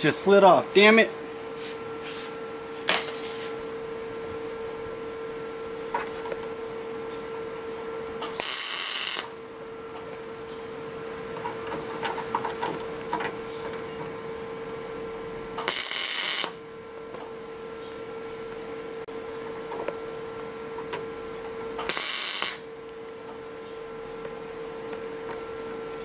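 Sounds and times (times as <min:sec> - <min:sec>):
welder hum: 0:00.0 - 0:10.4, 0:15.0 - 0:17.6, 0:21.5 - 0:24.3
welding arcs crackling: 0:08.3 - 0:09.3, 0:15.6 - 0:16.6, 0:21.8 - 0:22.6.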